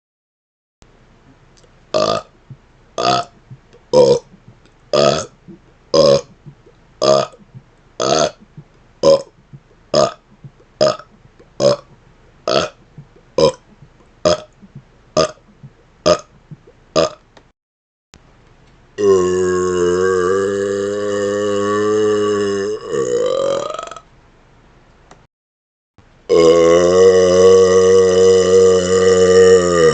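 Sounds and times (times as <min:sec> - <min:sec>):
man burping: 0:01.9 - 0:02.3, 0:03.0 - 0:17.2, 0:19.0 - 0:24.0, 0:26.3 - 0:29.9.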